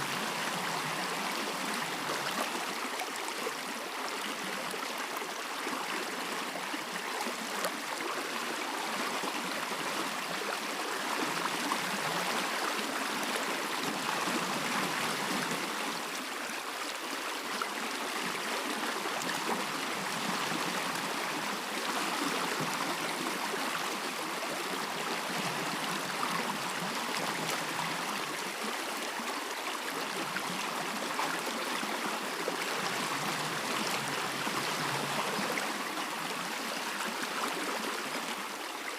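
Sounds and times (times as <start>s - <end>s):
stream rushing and babbling: 0.0s - 38.9s.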